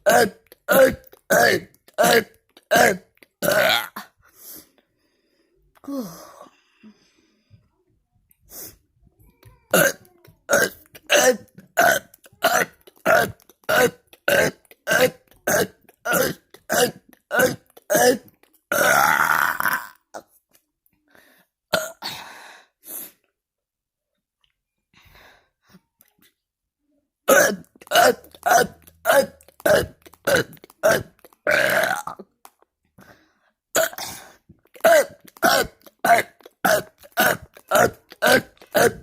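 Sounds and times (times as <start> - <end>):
person burping: 0.0 - 4.2, 9.7 - 20.3, 21.7 - 22.2, 27.3 - 32.5, 33.8 - 39.0.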